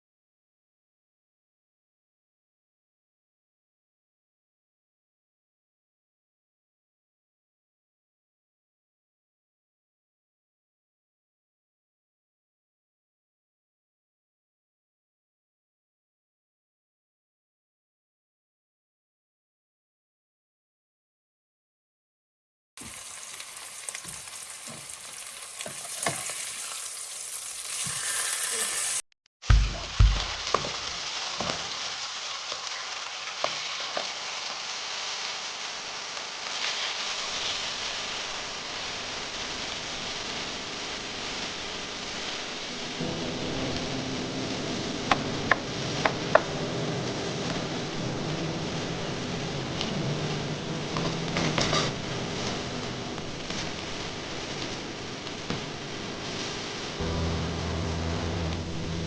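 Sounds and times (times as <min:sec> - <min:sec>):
cooking hiss: 0:22.8 - 0:29.0, 0:29.8 - 0:43.6
minced meat sizzling in a pan: 0:22.8 - 0:29.0, 0:29.8 - 0:43.2.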